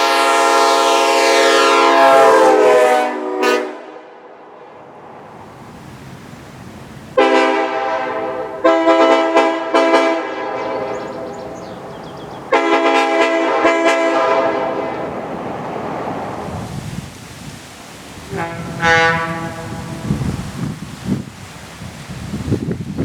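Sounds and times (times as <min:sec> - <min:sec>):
locomotive air horn blasts: 0:00.0 - 0:04.3, 0:07.2 - 0:11.7, 0:12.5 - 0:15.1, 0:18.2 - 0:20.2.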